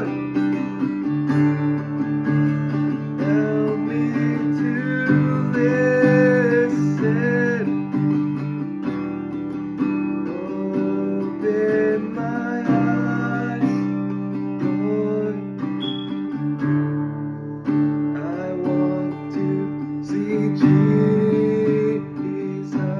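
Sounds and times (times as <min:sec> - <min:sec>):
acoustic guitar music: 0:00.0 - 0:22.9
short high beep: 0:15.8 - 0:16.4.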